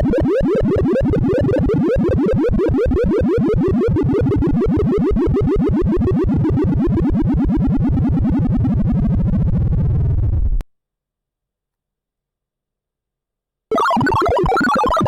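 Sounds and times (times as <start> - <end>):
rapid synthesized beeps: 0.0 - 7.1, 13.7 - 15.0.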